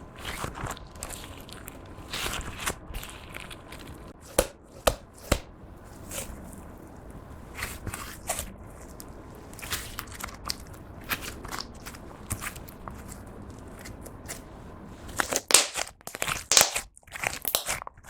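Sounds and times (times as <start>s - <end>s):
slime squished by hand: 7.5s - 17.9s.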